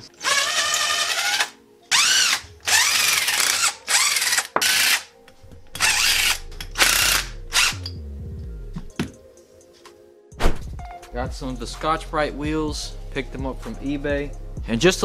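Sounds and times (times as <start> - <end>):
power drill motor whining: 0.0 - 5.1, 5.7 - 7.8.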